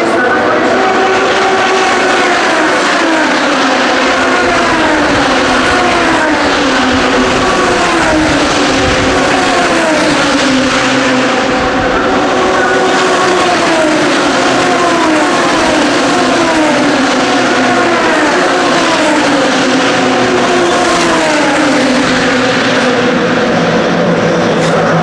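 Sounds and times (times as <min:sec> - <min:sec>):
racing car engines passing: 0:00.0 - 0:25.0.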